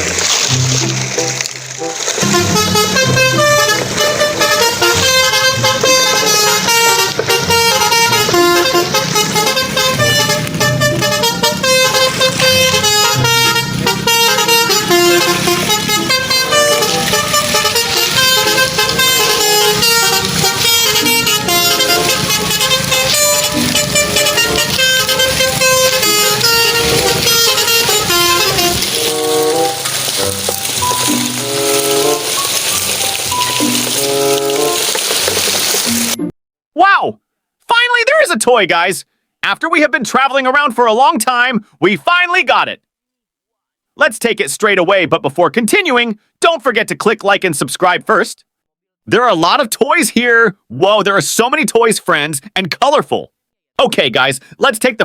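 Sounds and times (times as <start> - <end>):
busy melody over steady beat: 0.7 - 34.8.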